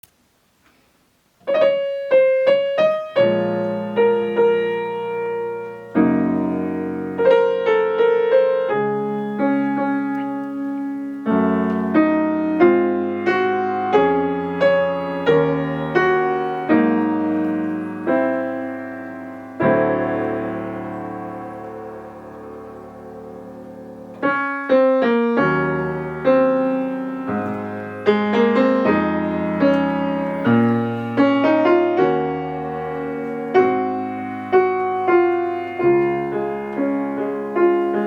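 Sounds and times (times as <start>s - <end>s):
solo piano melody: 1.2s - 38.0s.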